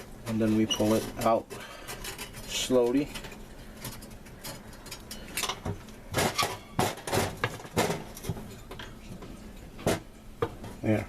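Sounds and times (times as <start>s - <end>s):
soft metal rubbing: 0.3s - 5.4s.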